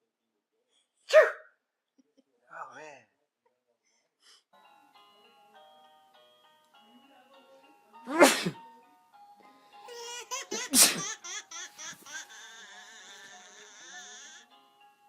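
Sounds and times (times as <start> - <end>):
baby sneezing: 1.1 - 1.5, 8.1 - 8.6, 10.5 - 11.2
background music: 4.5 - 15.0
baby laughing: 9.9 - 14.4.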